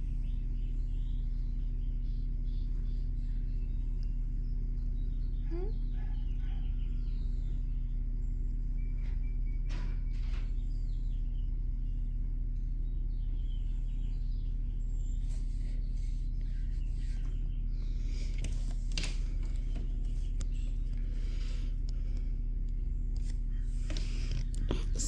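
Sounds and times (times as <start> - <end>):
steady low hum: 0.0 - 25.0
faint rustling: 15.1 - 25.0.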